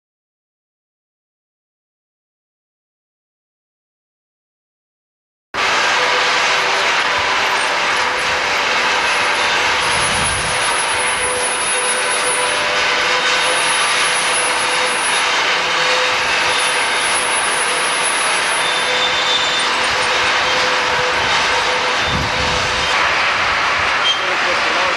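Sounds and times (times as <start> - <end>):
faint high whine: 5.6 - 23.1
sawmill machinery running: 5.6 - 24.9.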